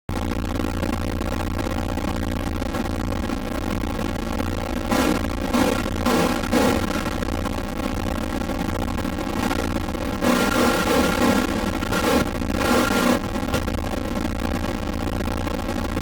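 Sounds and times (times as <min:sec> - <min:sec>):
digital glitch buzzing: 0:04.9 - 0:07.2, 0:09.4 - 0:13.8.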